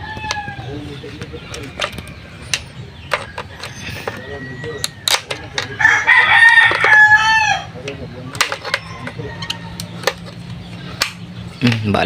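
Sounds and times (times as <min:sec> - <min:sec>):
rooster crowing: 0:00.0 - 0:01.0, 0:03.3 - 0:07.8, 0:08.6 - 0:10.1
sharp clicks and knocks: 0:01.2 - 0:05.8, 0:07.8 - 0:11.9.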